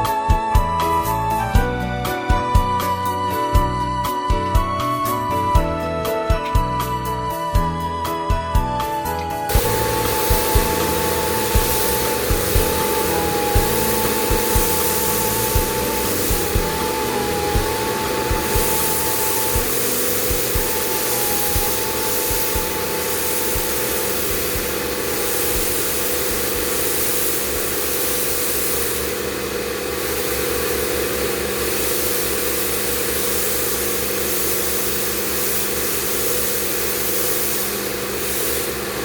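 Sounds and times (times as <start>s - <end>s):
machine pulsing with hiss: 9.5s - 39.0s
thin high tone: 9.5s - 39.0s.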